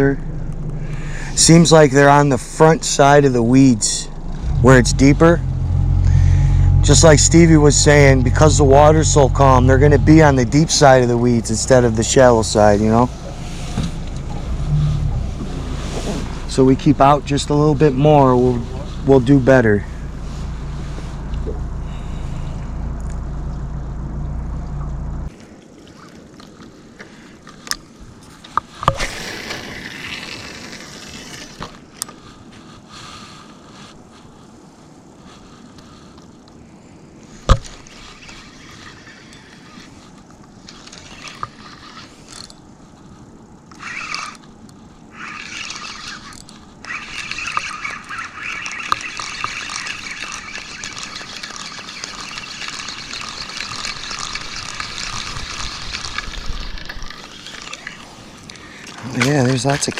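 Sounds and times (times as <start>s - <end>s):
boat motor running: 0.0s - 25.3s, 45.1s - 59.9s.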